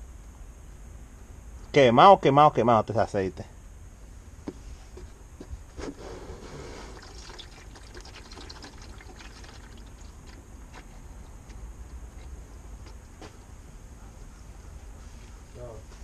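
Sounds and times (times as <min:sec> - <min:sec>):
oil trickling into a pan: 0:06.8 - 0:10.6.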